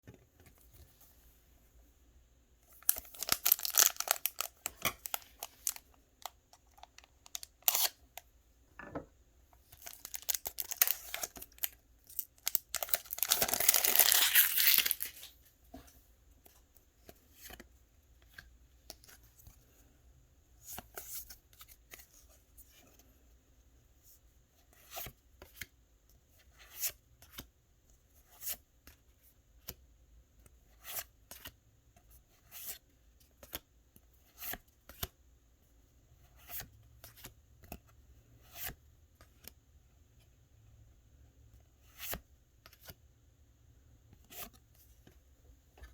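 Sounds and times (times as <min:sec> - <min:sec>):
foil wrapper crinkling and tearing: 0:02.8 - 0:05.8, 0:09.8 - 0:15.3.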